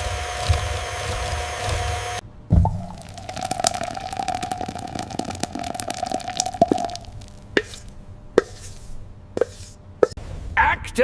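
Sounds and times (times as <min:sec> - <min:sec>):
dense crackling: 0:02.6 - 0:07.9.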